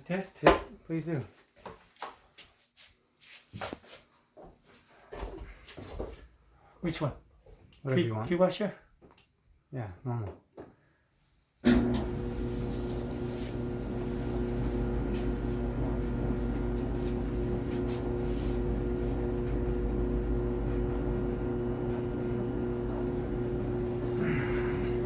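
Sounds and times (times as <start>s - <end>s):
clothes dryer humming: 11.6s - 25.0s.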